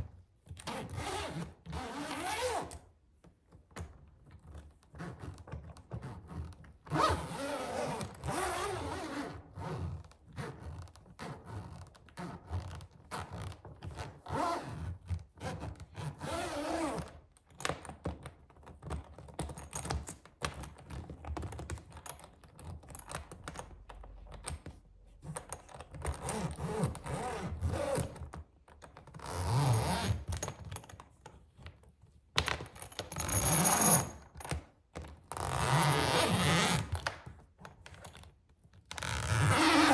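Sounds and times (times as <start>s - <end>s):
suitcase zipper pulled: 0.6s - 2.8s, 6.9s - 10.6s, 15.5s - 17.1s, 26.2s - 28.2s, 29.2s - 30.4s, 33.1s - 34.2s, 35.4s - 37.0s, 39.0s - 39.9s.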